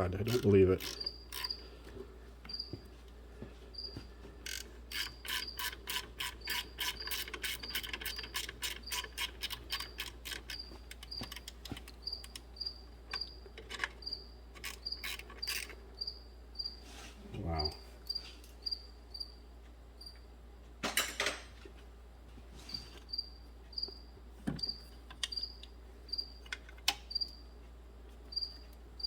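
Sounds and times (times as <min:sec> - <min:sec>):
cricket chirping: 0:00.2 - 0:01.7, 0:02.5 - 0:02.8, 0:03.8 - 0:16.8, 0:17.6 - 0:19.4, 0:20.0 - 0:20.2, 0:23.1 - 0:26.5, 0:27.1 - 0:27.5, 0:28.3 - 0:28.8
socket ratchet clicking: 0:00.3 - 0:01.6, 0:04.5 - 0:12.5, 0:13.1 - 0:15.8.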